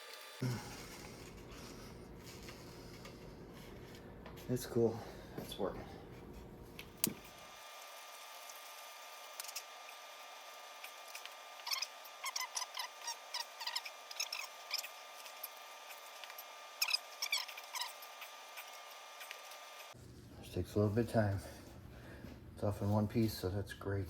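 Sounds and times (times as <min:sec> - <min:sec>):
plastic hub squeaking and creaking: 0:11.1 - 0:19.5.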